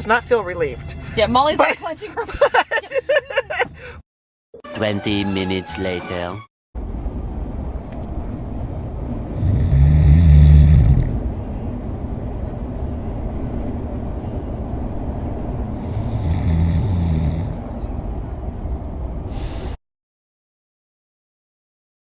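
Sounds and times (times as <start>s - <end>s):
car driving rumble: 6.8s - 19.6s
person snoring: 9.4s - 11.2s, 15.8s - 17.6s.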